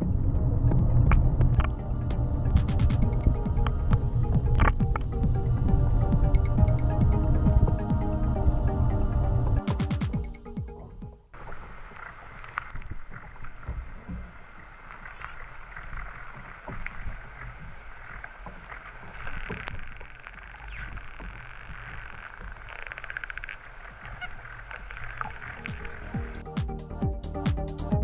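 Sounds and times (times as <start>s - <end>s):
low thumps and clicks: 0.0s - 11.2s, 25.0s - 28.0s.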